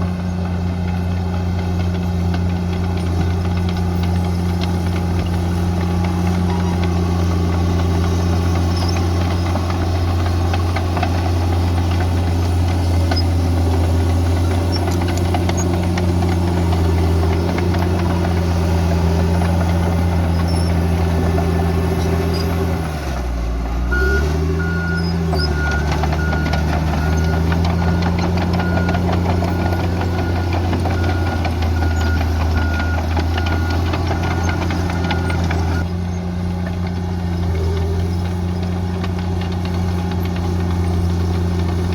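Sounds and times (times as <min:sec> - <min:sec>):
bulldozer diesel engine: 0:00.0 - 0:41.9
reversing alarm beeping: 0:23.9 - 0:35.8.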